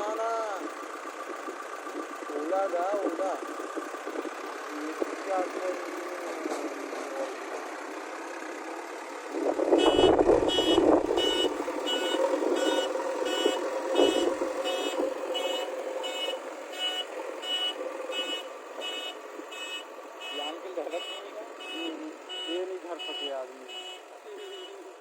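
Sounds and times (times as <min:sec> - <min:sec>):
diesel engine running: 0:00.0 - 0:25.0
reversing alarm beeping: 0:09.9 - 0:24.0.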